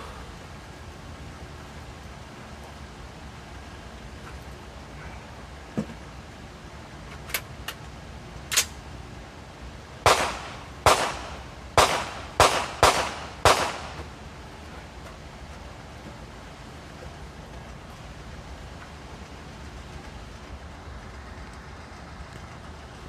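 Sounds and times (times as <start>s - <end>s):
echoing gunshots: 10.0s - 14.1s.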